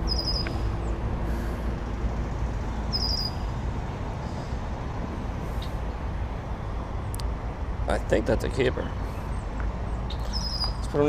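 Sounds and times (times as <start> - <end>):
bird chirping: 0.0 - 1.0, 2.7 - 3.5, 9.0 - 11.0
steady low rumble: 0.0 - 11.0.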